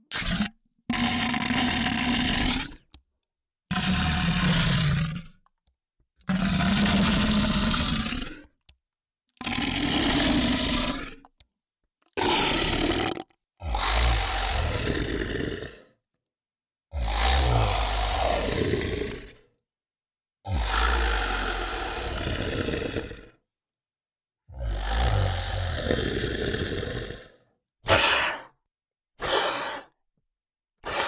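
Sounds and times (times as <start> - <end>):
monster growling: 27.9 - 28.5, 29.2 - 29.9.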